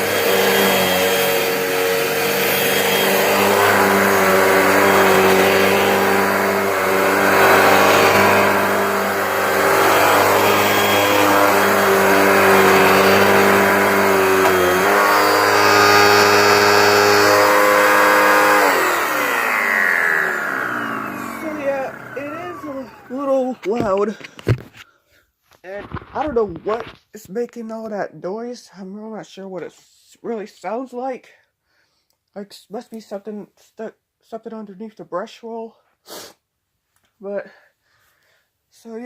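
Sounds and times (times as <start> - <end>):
upright vacuum cleaner running: 0.0 - 24.7.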